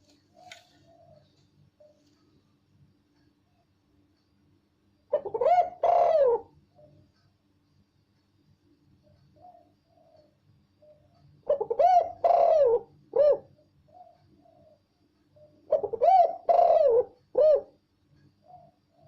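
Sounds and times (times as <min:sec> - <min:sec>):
dove cooing: 0:00.0 - 0:02.2, 0:05.1 - 0:07.0, 0:09.4 - 0:19.0.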